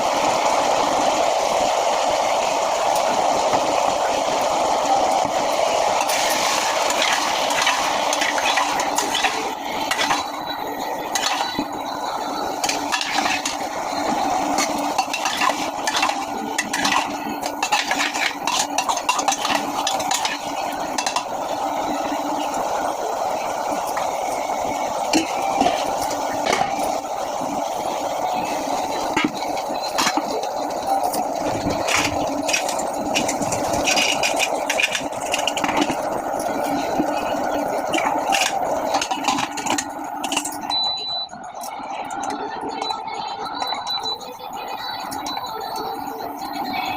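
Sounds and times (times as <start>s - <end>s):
frying hiss: 0.0s - 46.9s
metal utensil clinking and scraping pan: 6.0s - 10.3s, 11.0s - 11.6s, 12.6s - 13.7s, 14.6s - 21.3s, 31.8s - 36.0s, 37.8s - 40.6s.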